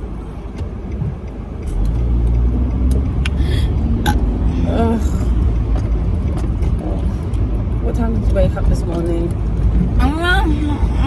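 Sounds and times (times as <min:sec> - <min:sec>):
car engine and road rumble: 0:00.0 - 0:11.0.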